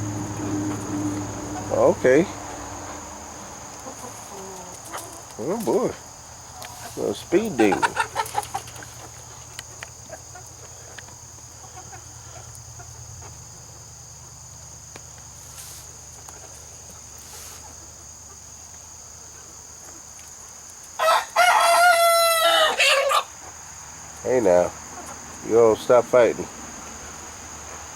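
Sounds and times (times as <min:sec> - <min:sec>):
chicken-yard background: 0:00.0 - 0:27.9
rooster crowing: 0:21.0 - 0:23.4.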